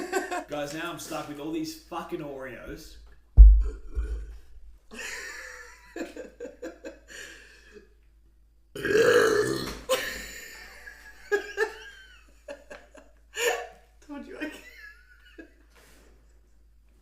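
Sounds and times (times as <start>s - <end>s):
woman burping: 3.6s - 4.4s, 8.8s - 10.0s.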